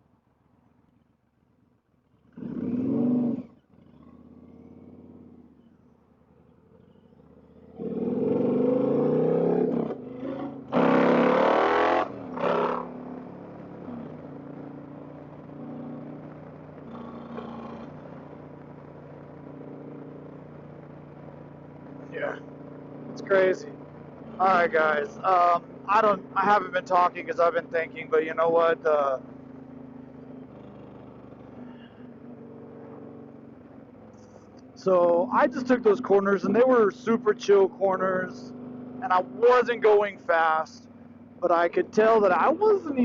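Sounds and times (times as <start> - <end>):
motorcycle engine accelerating: 0.0 - 43.0.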